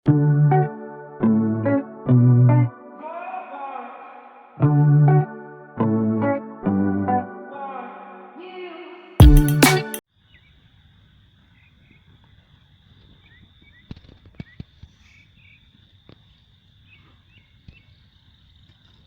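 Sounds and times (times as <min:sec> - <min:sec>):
loud intro music: 0:09.2 - 0:10.0
high insect drone: 0:10.3 - 0:19.0.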